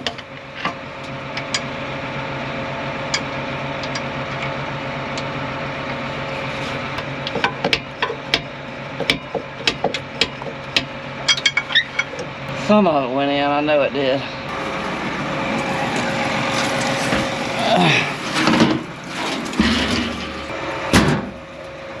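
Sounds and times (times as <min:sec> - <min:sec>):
steady mechanical hum: 0:00.0 - 0:22.0.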